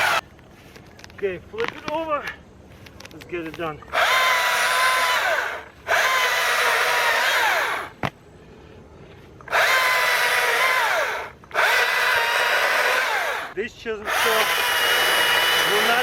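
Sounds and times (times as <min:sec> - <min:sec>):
electric chainsaw motor whine: 0:00.0 - 0:00.2, 0:03.9 - 0:07.9, 0:09.5 - 0:16.0.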